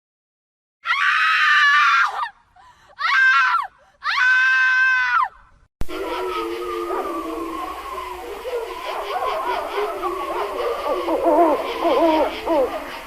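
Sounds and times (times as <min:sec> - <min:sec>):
high-pitched human screams: 0:00.8 - 0:02.3, 0:03.0 - 0:05.3
eerie wavering held tones: 0:05.8 - 0:13.0.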